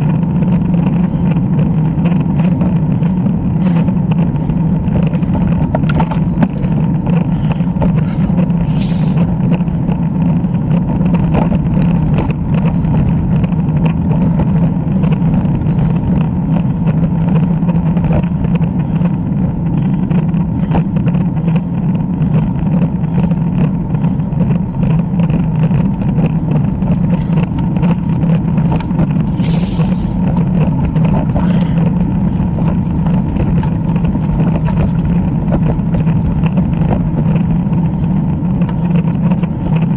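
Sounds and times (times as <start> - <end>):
low rumble: 0.0 - 39.9
wind noise on microphone: 0.0 - 39.9
brief hisses: 8.6 - 9.3, 29.3 - 30.2.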